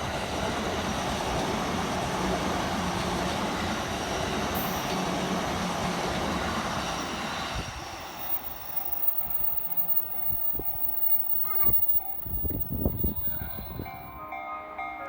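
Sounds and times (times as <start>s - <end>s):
train wheels rolling: 4.6s - 14.3s.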